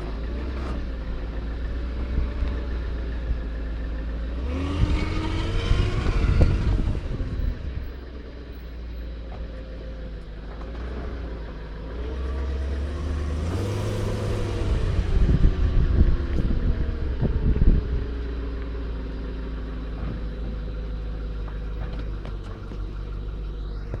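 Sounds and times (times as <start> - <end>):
engine revs blipped: 0.0 - 8.6, 10.8 - 24.0
car engine idling with whine: 0.0 - 24.0.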